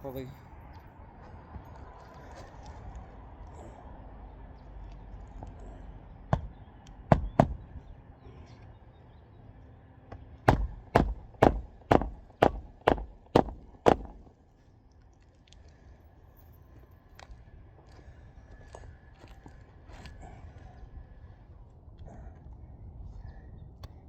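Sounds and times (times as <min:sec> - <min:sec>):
hammer striking nail: 0:07.1 - 0:07.7, 0:10.5 - 0:14.3.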